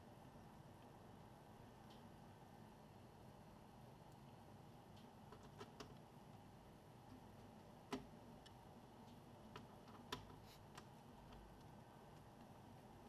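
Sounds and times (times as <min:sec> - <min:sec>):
small parts clicking and tapping: 0:04.1 - 0:13.0.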